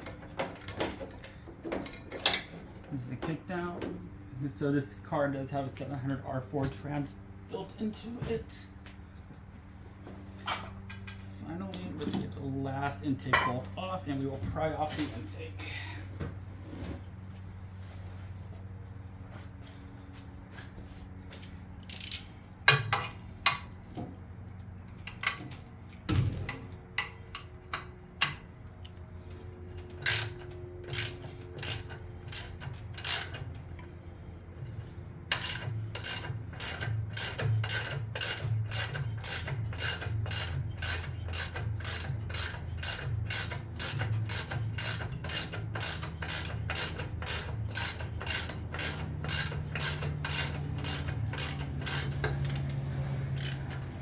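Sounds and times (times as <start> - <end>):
socket ratchet clicking: 30.0 - 33.4, 35.4 - 52.8, 53.4 - 53.7.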